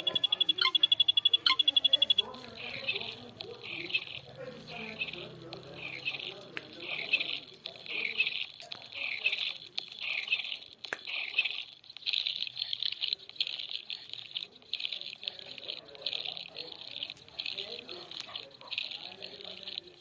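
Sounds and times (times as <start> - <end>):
pulsed frog calls: 0.0 - 11.7.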